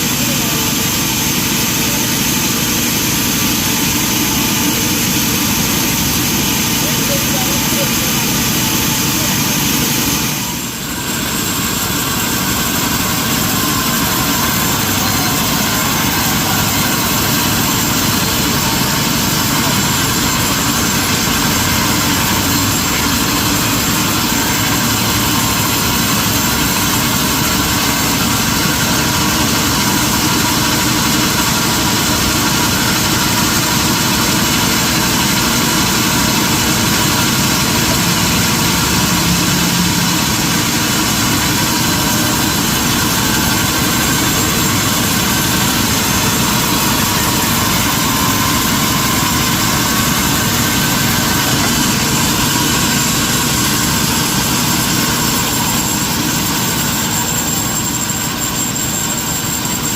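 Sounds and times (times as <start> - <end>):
sawmill machinery running: 0.0 - 59.9.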